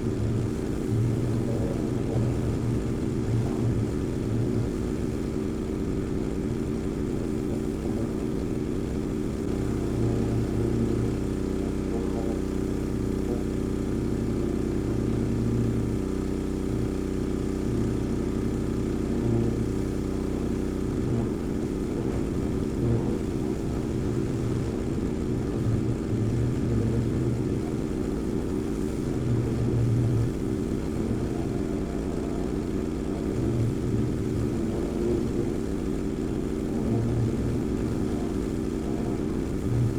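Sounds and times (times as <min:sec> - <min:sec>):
pressure washer engine running: 0:20.5 - 0:39.9.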